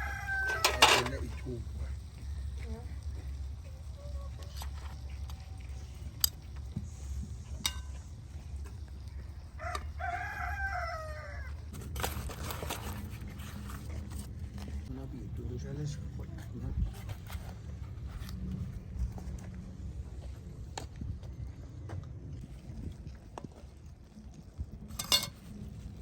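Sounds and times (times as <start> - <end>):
rooster crowing: 0.0 - 1.1, 9.5 - 11.6
steady low rumble: 13.1 - 26.0.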